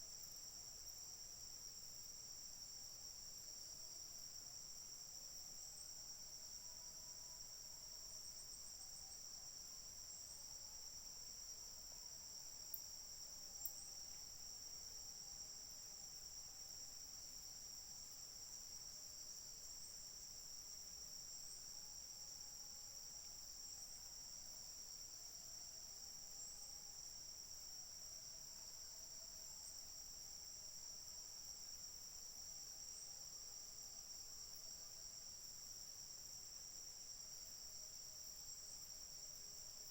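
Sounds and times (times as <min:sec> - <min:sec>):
insects chirring: 0:12.2 - 0:16.4.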